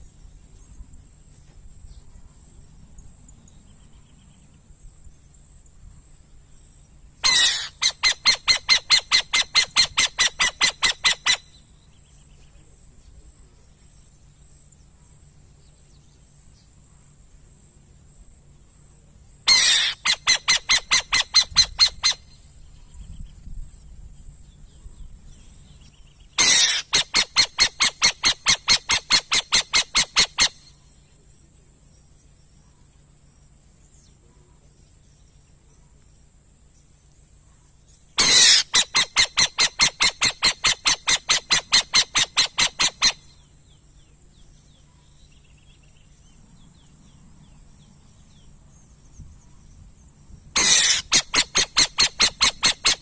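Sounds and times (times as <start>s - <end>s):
steady high-pitched whine: 0.0s - 53.0s
bird calling harsh repeated notes: 7.2s - 11.6s, 19.5s - 22.4s, 26.4s - 30.8s, 38.2s - 43.4s, 50.6s - 53.0s.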